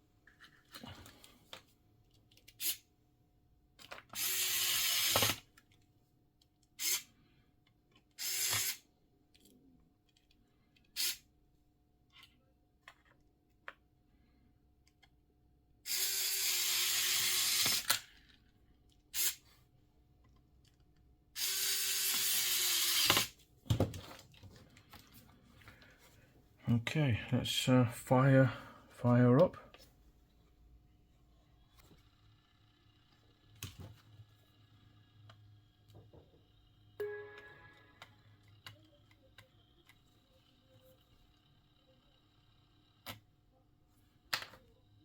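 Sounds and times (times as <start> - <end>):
electric screwdriver motor whine: 4.2 - 5.4, 15.9 - 18.0, 21.4 - 23.3.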